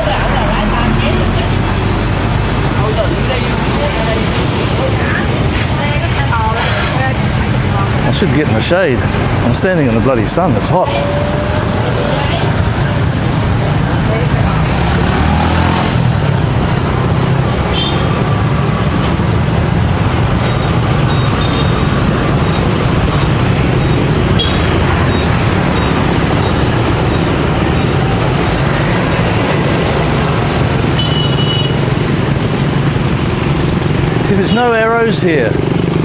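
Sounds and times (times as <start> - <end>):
road traffic noise: 0.0 - 36.0
short high-pitched beeps: 20.4 - 28.2.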